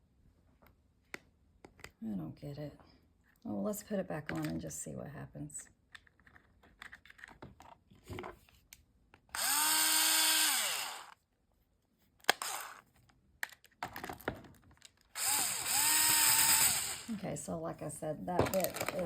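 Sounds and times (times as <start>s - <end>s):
electric chainsaw motor spinning: 9.3s - 11.2s, 12.3s - 12.8s, 15.1s - 17.2s.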